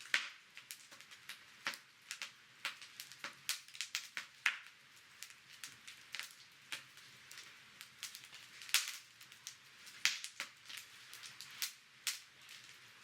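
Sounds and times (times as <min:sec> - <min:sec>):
soft fire hiss: 0:00.0 - 0:13.0
wood fire crackling and popping: 0:00.0 - 0:13.0.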